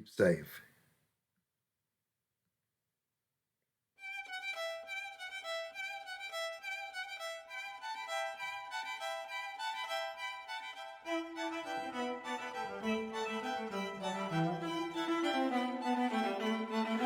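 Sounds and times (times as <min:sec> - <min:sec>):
string accompaniment: 0:04.0 - 0:17.0
violin melody: 0:04.0 - 0:17.0.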